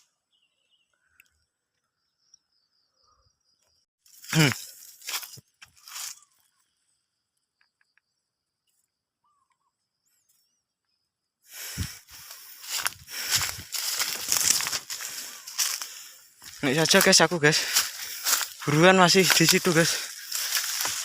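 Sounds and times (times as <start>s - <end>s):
rustling through dry undergrowth: 4.0s - 6.6s, 11.6s - 21.0s.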